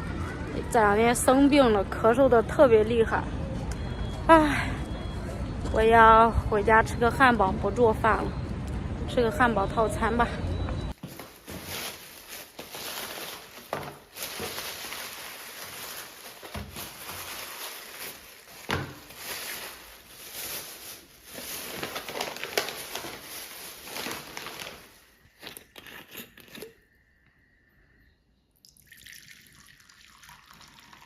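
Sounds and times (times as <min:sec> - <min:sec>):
bags rustling and crinkling: 0:11.0 - 0:25.7.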